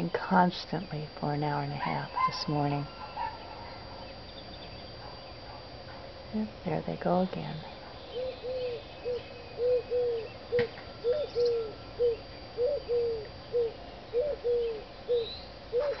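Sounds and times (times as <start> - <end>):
dogs barking in the distance: 1.8 - 4.0, 4.9 - 6.0, 7.7 - 8.2.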